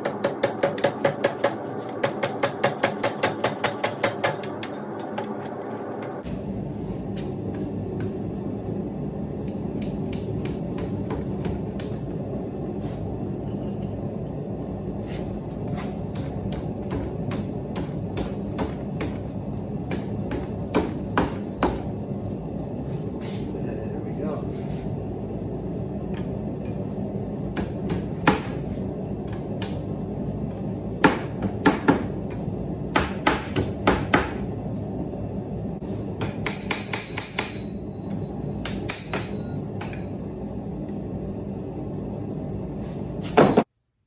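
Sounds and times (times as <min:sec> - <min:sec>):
steady background noise: 0:00.0 - 0:43.7
hammer ringing on anvil: 0:36.2 - 0:37.8, 0:38.6 - 0:40.0.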